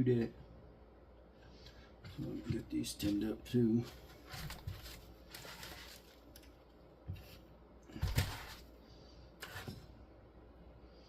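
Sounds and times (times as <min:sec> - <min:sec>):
clicks and rustles of wires and tools: 0:01.5 - 0:08.7.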